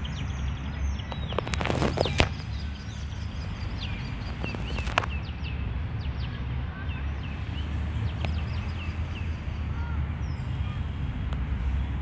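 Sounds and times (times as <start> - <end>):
small birds chirping: 0.5 - 5.6.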